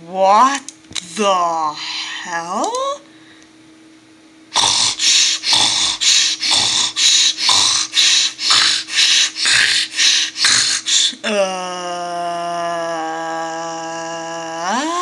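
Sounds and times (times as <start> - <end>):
loud rasping snoring: 4.5 - 11.1.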